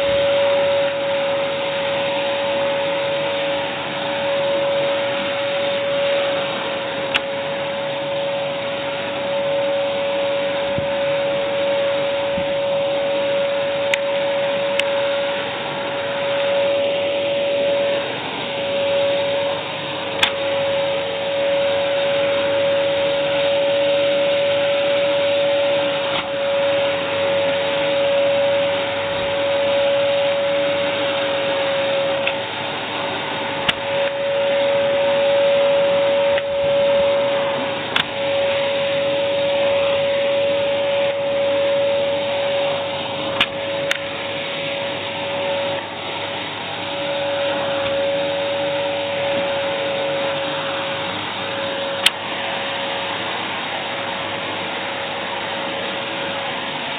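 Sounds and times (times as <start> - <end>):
vacuum cleaner running: 0.0 - 56.9.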